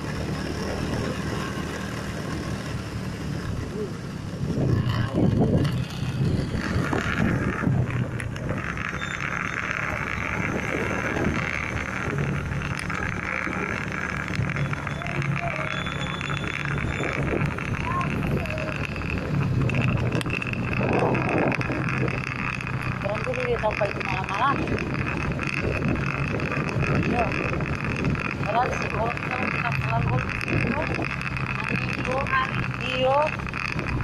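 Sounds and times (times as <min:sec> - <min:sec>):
vehicle engine hum: 0:00.0 - 0:34.0
wind and road noise: 0:00.0 - 0:34.0
voices: 0:12.6 - 0:22.2, 0:22.8 - 0:33.4.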